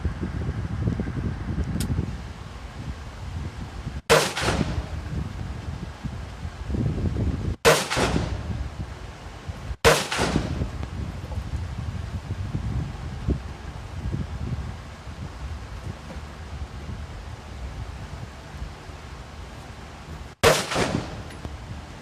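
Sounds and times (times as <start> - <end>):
wind rumble on microphone: 0.0 - 22.0
rifle shots: 4.1 - 4.9, 7.6 - 8.5, 9.8 - 10.7, 20.4 - 21.3.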